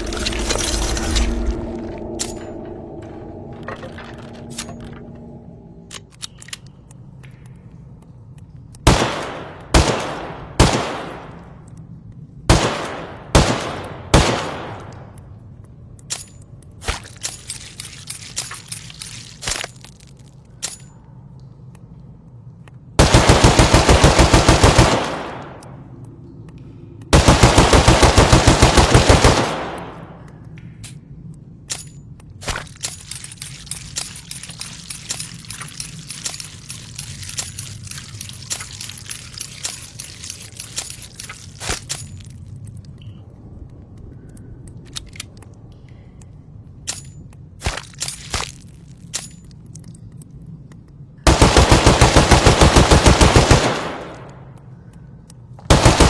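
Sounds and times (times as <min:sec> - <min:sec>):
steady low hum: 0:00.0 - 0:56.0
sharp clicks and snaps: 0:30.2 - 0:51.2, 0:54.1 - 0:55.7.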